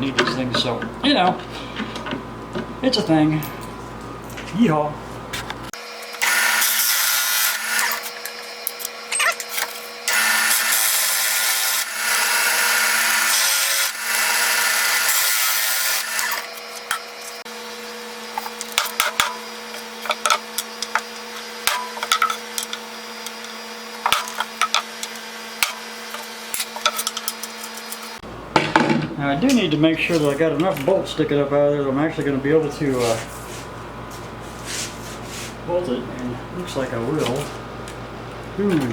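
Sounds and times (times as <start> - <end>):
drill press motor hum: 5.8 - 28.2
drill bit boring into wood: 6.2 - 8.2, 9.4 - 16.6.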